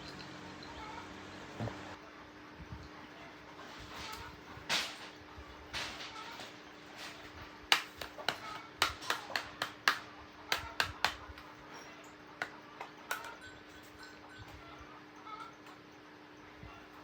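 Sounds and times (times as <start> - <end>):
metal tools clicking: 11.8 - 14.6.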